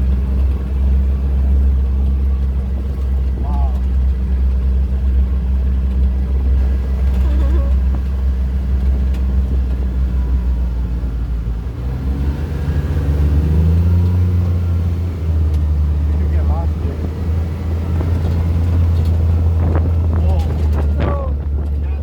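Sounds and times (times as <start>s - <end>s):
atv engine droning: 0.0s - 22.0s.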